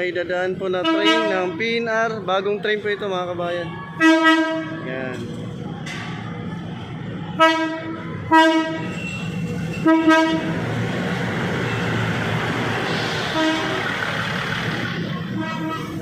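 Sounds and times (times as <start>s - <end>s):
train rumble: 2.8s - 16.0s
train horn toots: 4.0s - 4.8s, 7.4s - 8.9s, 9.8s - 10.6s, 13.3s - 13.9s, 15.4s - 16.0s.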